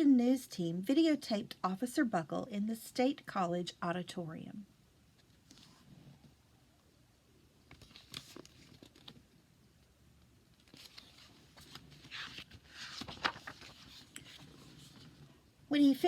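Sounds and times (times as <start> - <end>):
pages rustling: 5.2 - 5.9, 7.7 - 9.3, 10.5 - 15.3.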